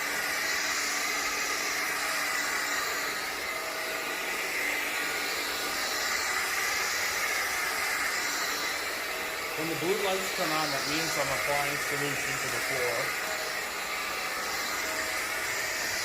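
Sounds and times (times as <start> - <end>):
floor cleaner whirring: 0.0 - 16.0.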